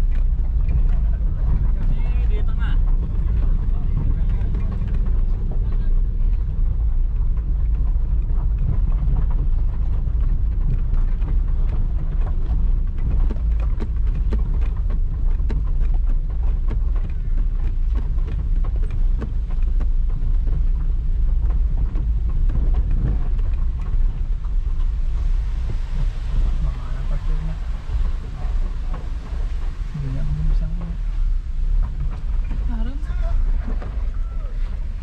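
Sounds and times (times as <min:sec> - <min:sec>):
vehicle rumble: 0:00.0 - 0:35.0
wind buffeting microphone: 0:00.0 - 0:35.0.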